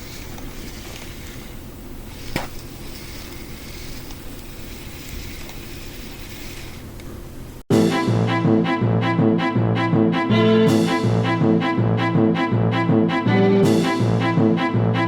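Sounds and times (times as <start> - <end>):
spinning reel cranking noise: 0.0 - 6.9.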